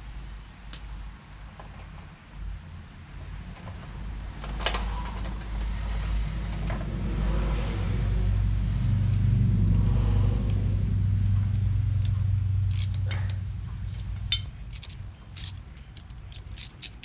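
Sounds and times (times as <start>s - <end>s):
engine humming: 3.0s - 17.0s.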